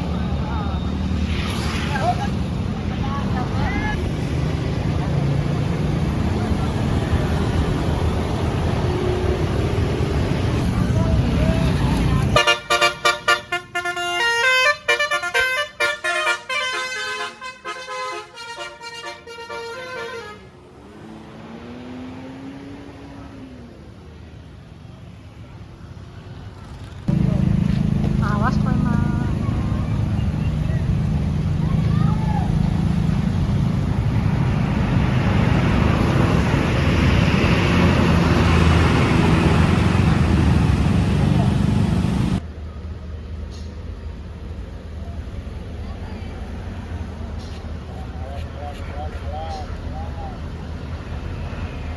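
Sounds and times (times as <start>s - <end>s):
bus engine rumble: 0.0s - 51.9s
tyre and road noise: 0.0s - 51.9s
multi-tone air horn tune: 12.4s - 20.4s.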